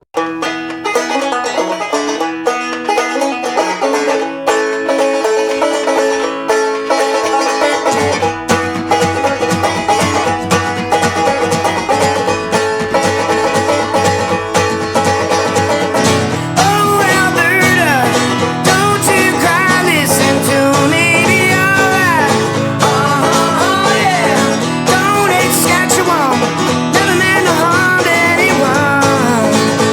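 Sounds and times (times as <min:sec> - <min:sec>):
quick plucked notes: 0:00.0 - 0:29.9
sliding melody line: 0:00.2 - 0:29.9.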